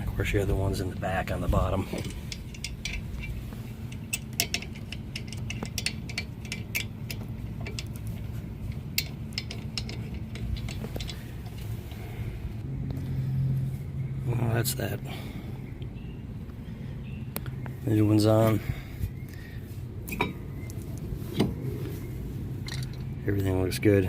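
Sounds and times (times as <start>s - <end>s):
steady low hum: 0.0s - 24.0s
wrench metallic clicks: 1.9s - 12.0s.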